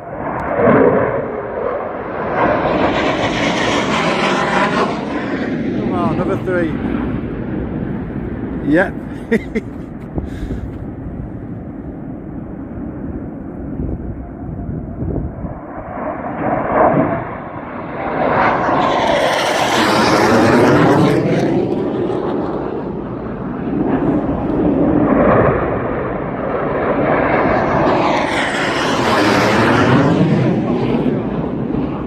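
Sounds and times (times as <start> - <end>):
fighter jet roar: 0.0 - 32.0.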